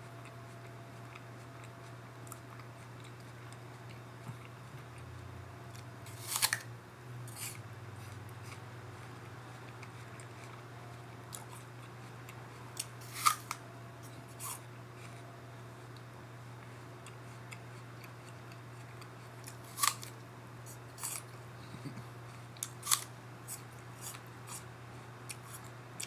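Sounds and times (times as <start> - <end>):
steady low hum: 0.0 - 26.0
chewing crunch: 0.1 - 5.0, 7.3 - 15.2, 15.8 - 26.0
apple bite crunches: 5.7 - 6.7, 12.3 - 13.6, 18.8 - 21.4, 22.6 - 24.6.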